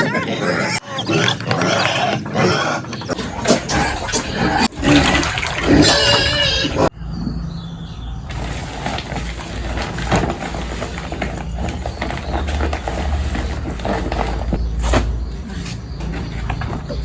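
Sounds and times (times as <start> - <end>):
pigs grunting: 0.0 - 6.9.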